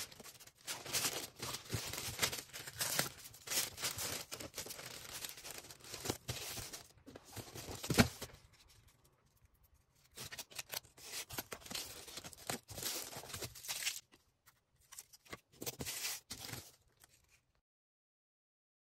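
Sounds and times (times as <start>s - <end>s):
plastic packaging rustling: 0.0s - 9.0s, 10.0s - 14.2s.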